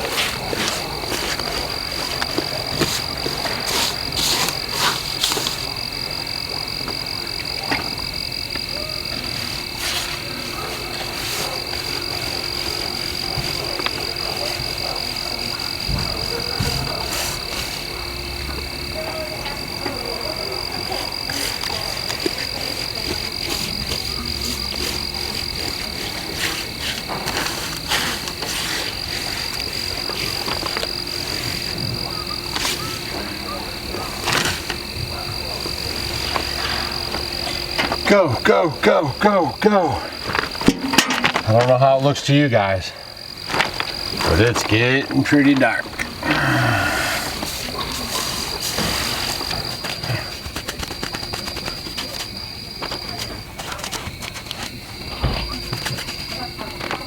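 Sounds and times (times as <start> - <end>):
frogs croaking: 0.0 - 57.0
insects trilling: 0.0 - 57.0.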